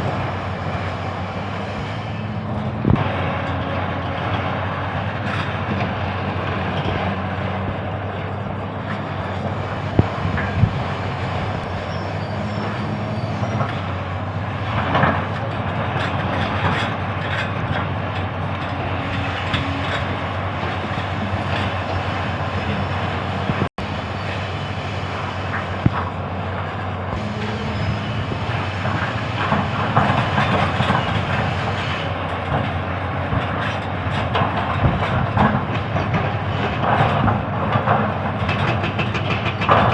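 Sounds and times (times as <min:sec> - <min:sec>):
excavator diesel engine running: 0:00.0 - 0:39.9
metallic clanks and knocks: 0:14.6 - 0:22.9, 0:28.8 - 0:39.9.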